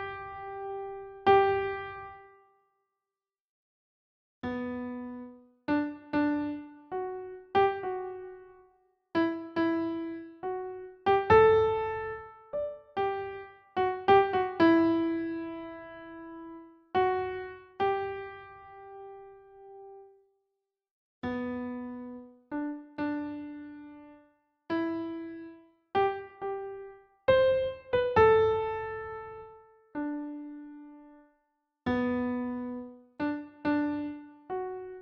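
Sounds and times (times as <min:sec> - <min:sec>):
slow solo piano melody: 0:04.5 - 0:08.6, 0:09.2 - 0:20.0, 0:24.7 - 0:31.2, 0:31.9 - 0:35.0.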